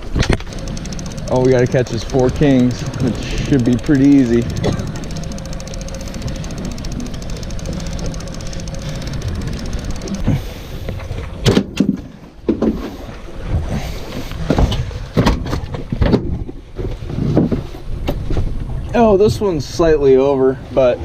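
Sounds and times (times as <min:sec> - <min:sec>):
boat engine idling: 0:00.0 - 0:11.4.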